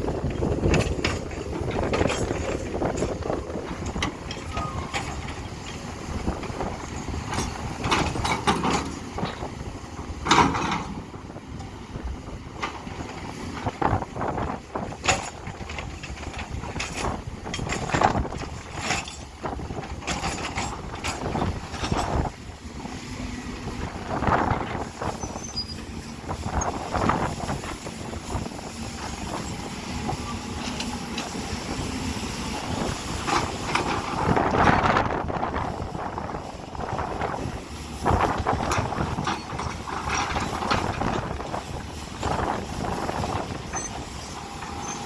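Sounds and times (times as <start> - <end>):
excavator metallic clanks: 0.0 - 11.8, 12.5 - 45.0
excavator squeals: 3.9 - 8.3, 24.2 - 33.6, 39.2 - 41.4, 42.2 - 45.0.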